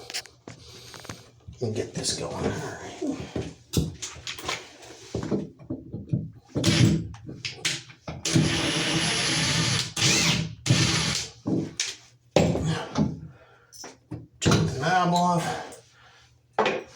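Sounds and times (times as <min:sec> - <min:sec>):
cordless drill running: 0:08.3 - 0:11.3.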